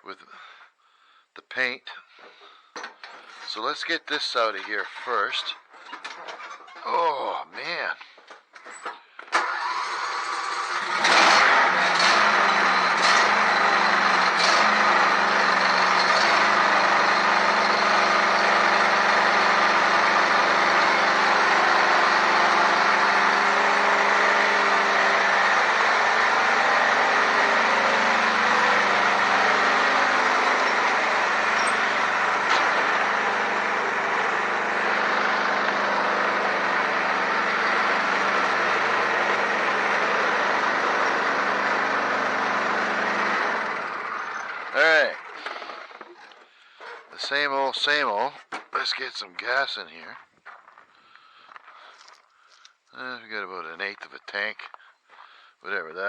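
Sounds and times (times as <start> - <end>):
engine cranking and starting: 2.1 - 47.6
engine idling: 9.4 - 49.0.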